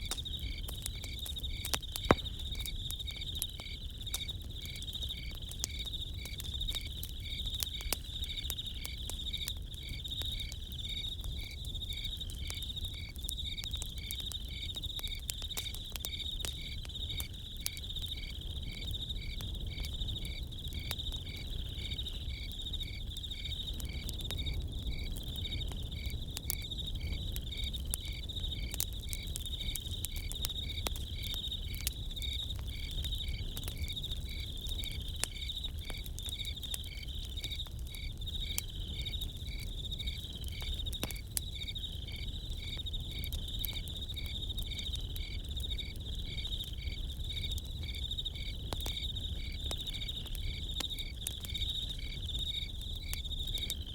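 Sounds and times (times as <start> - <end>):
campfire crackling: 0.0 - 53.9
crickets chirping: 0.0 - 53.9.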